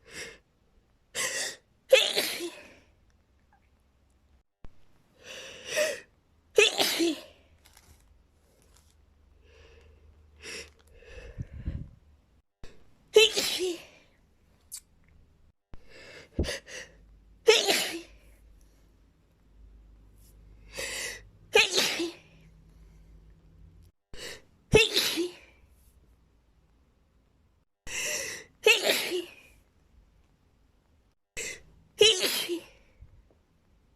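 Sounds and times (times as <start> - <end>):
woman sneezing: 1.9 - 2.7, 6.6 - 7.3, 13.2 - 13.9, 17.5 - 18.1, 21.6 - 22.3, 24.7 - 25.5, 28.6 - 29.4, 32.0 - 32.8
quiet breaths: 8.3 - 12.1, 22.4 - 23.6.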